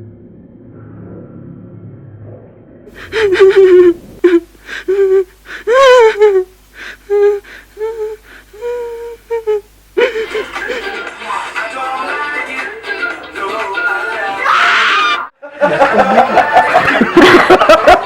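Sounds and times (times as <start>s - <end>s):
low rumble: 0.0s - 3.0s.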